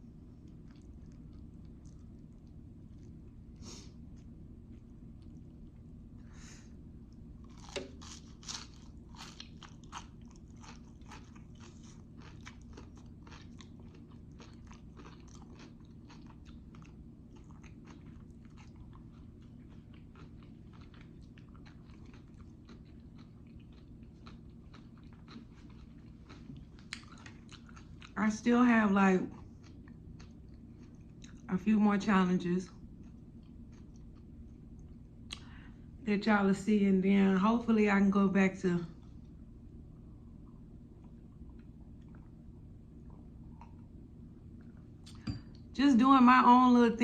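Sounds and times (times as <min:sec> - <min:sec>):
chewing and biting food: 0:00.3 - 0:03.4, 0:07.4 - 0:28.2, 0:29.3 - 0:31.5.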